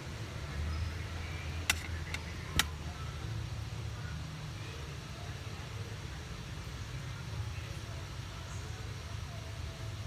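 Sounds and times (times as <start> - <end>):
sharp clicks: 1.7 - 2.8.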